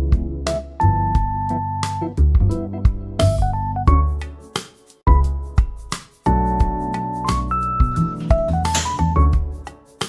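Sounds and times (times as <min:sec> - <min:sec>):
instrumental music with drums: 0:02.4 - 0:10.0.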